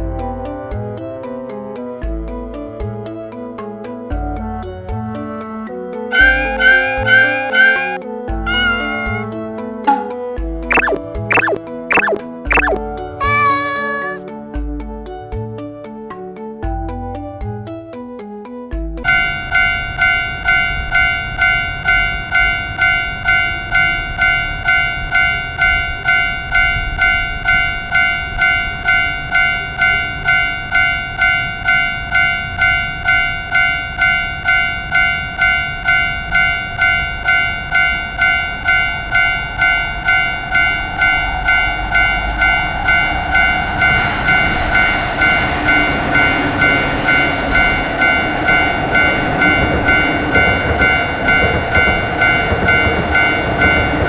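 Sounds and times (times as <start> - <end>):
railroad crossing bell ringing: 19.1 - 54.0
passing train rushing: 39.4 - 54.0.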